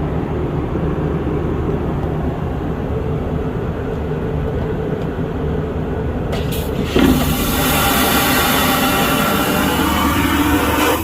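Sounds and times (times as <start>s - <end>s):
airliner cabin rumble: 0.0s - 11.0s.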